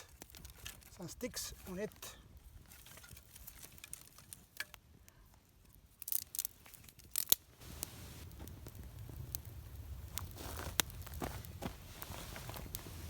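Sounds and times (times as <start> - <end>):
sticks snapping on campfire: 0.0 - 2.1, 2.7 - 13.0
sharp cracks: 6.0 - 11.3.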